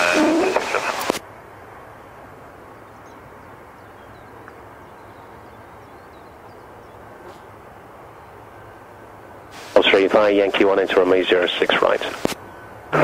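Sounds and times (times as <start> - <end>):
low background hiss and rumble: 0.0 - 13.0.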